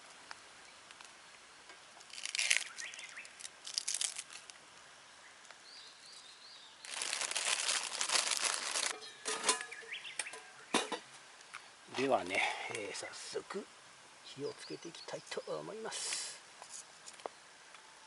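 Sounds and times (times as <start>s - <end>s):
cabbage crinkling and tearing: 2.0s - 4.6s, 6.8s - 9.0s.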